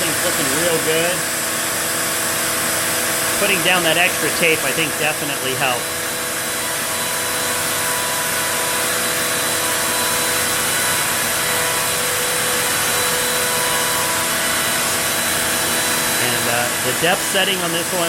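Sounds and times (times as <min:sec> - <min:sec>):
router spindle cutting wood: 0:00.0 - 0:18.0.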